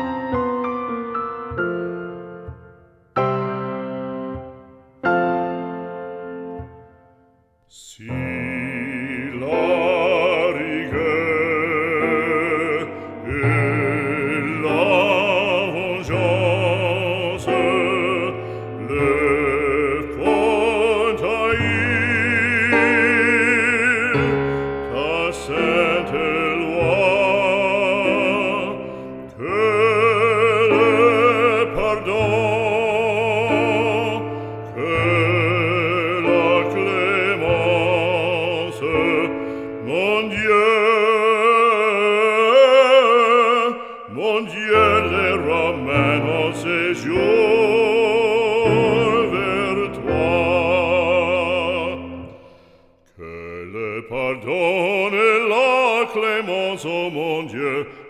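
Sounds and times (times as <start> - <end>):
operatic voice singing: 7.7 - 58.0
sustained accompaniment: 8.0 - 42.9.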